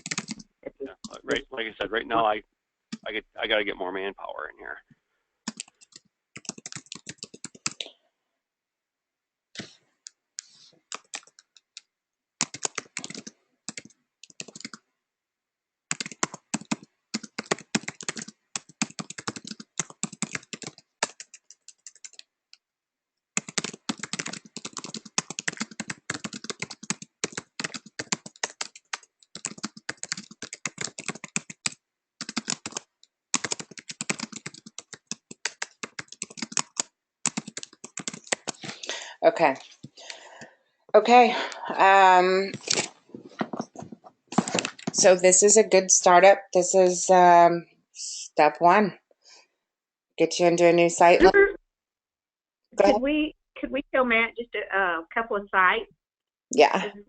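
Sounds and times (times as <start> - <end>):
typing on computer keyboard: 0.0 - 0.5, 5.5 - 7.9, 10.9 - 14.8, 15.9 - 22.3, 23.4 - 38.9.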